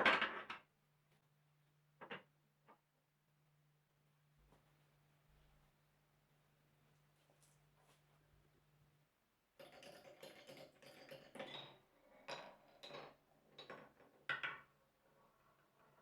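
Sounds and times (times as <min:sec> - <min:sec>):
glass marbles clattering down marble run: 0:09.6 - 0:14.7.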